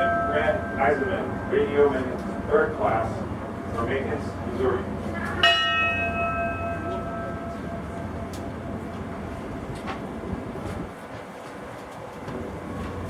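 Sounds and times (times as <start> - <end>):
ship's bell tolling: 0.0 - 3.8, 5.1 - 8.7.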